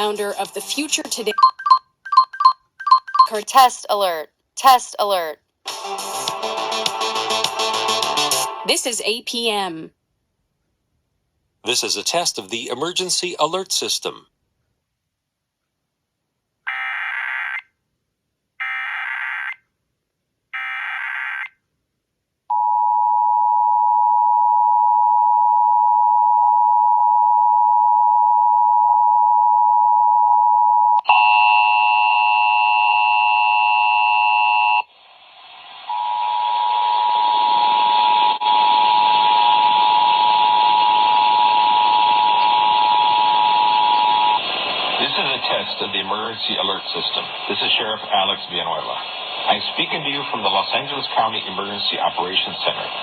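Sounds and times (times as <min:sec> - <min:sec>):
data burst tones: 0:01.2 - 0:03.7
two-tone attention signal: 0:01.3 - 0:03.4
loud hiss: 0:44.4 - 0:51.1.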